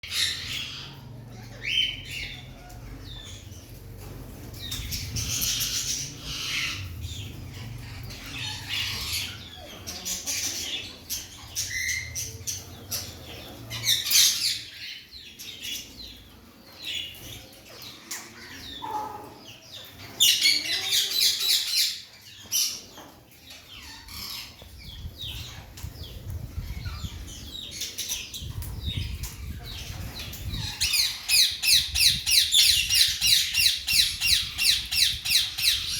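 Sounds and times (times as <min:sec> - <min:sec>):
parakeets squawking: 0:00.0 - 0:03.6, 0:04.6 - 0:15.0.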